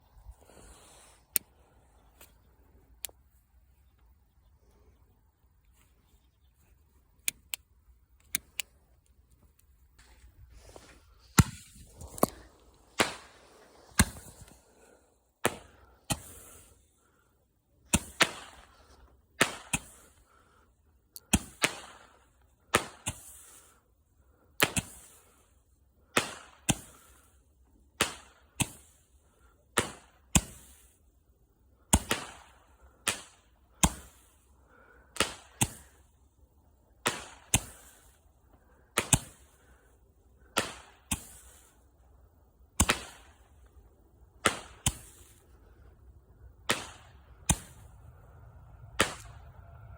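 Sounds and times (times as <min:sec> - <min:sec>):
small crackles: 0:05.6 - 0:14.7
firework pops with hiss: 0:10.7 - 0:14.6, 0:15.4 - 0:16.7, 0:17.9 - 0:18.8, 0:19.4 - 0:20.2, 0:21.2 - 0:23.7, 0:24.6 - 0:25.4, 0:26.1 - 0:27.4, 0:28.0 - 0:29.2, 0:29.8 - 0:31.1, 0:31.9 - 0:34.5, 0:35.1 - 0:36.2, 0:37.0 - 0:38.2, 0:38.9 - 0:39.7, 0:40.4 - 0:41.9, 0:42.7 - 0:43.7, 0:44.4 - 0:45.5, 0:46.6 - 0:48.0, 0:48.8 - 0:49.5.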